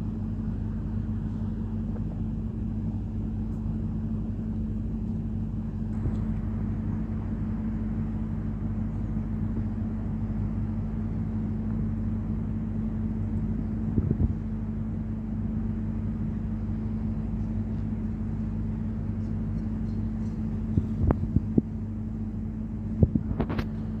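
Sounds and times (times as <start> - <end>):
drone humming: 2.5 - 15.0.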